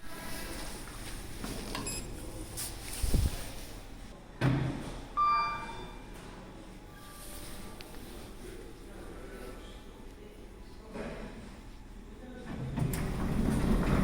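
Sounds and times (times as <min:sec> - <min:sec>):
lift doors thump and knock: 0:12.5 - 0:14.0.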